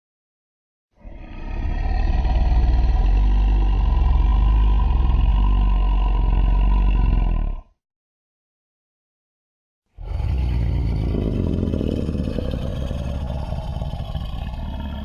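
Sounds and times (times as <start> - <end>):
deep monster rumble: 1.0 - 7.8, 10.0 - 15.0.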